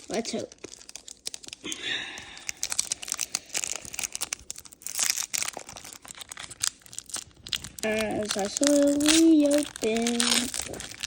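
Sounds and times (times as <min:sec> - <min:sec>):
foil wrapper crinkling and tearing: 0:00.0 - 0:11.0.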